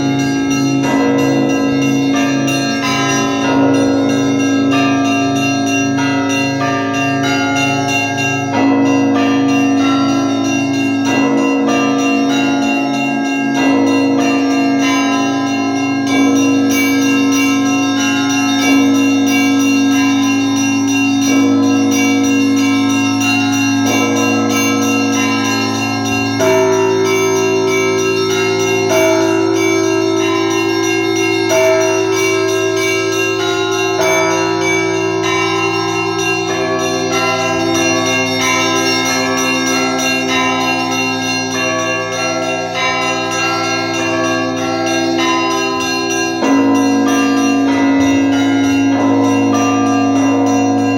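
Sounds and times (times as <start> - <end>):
large bells ringing: 0.0 - 50.9
small church bells ringing: 0.0 - 50.9
deep bell struck: 41.7 - 50.9.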